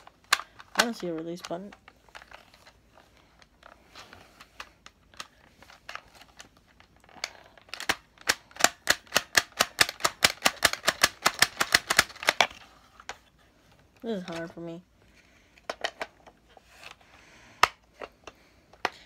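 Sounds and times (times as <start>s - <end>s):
plastic toy blaster clicking: 7.2s - 12.5s.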